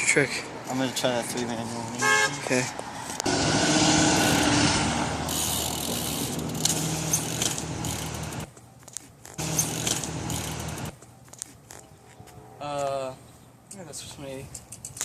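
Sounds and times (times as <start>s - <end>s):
bike tyres on concrete: 2.0s - 12.8s
freewheel hub ratcheting: 5.3s - 8.5s, 9.3s - 10.9s.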